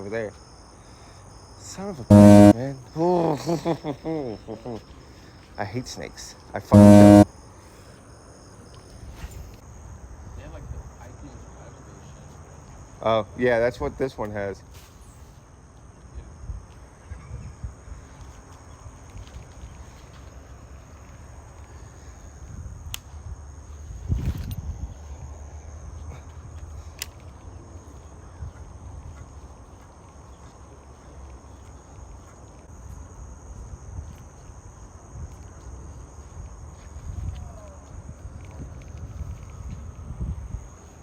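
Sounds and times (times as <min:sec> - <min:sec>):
insects droning: 0:00.0 - 0:41.0.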